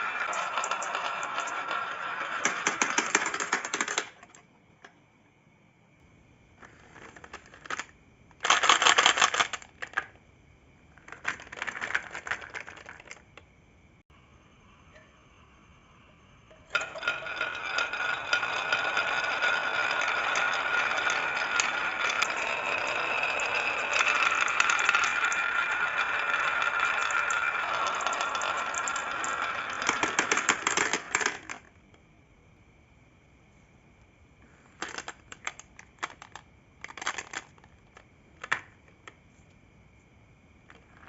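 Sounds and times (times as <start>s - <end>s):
marbles rattling down a track: 0.0s - 4.2s, 6.6s - 10.1s, 11.0s - 13.2s, 16.7s - 31.7s.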